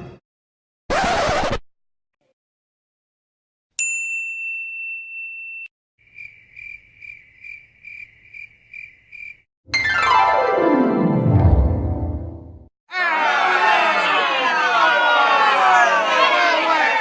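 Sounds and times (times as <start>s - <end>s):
high ding: 3.8s - 5.7s
crickets chirping: 6.0s - 9.4s.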